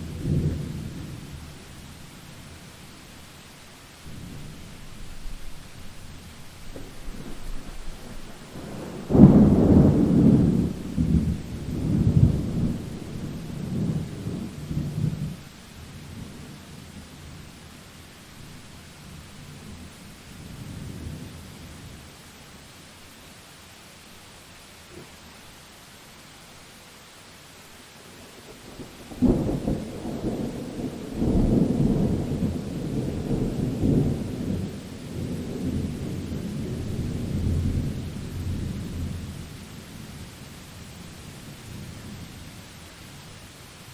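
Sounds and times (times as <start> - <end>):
steady rain: 0.0 - 43.9
thunder crack and rumbling: 6.6 - 15.4, 28.7 - 39.5.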